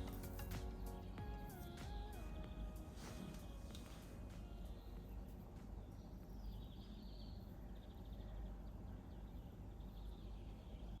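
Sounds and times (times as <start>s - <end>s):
faint bird chirps and trill: 4.3s - 11.0s.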